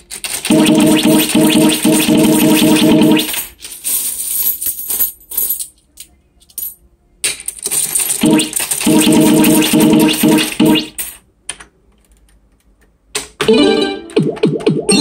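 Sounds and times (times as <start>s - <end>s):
slot machine electronic music: 0.5s - 3.4s, 8.2s - 11.0s, 13.5s - 15.0s
game clicks and jingles: 7.8s - 11.0s.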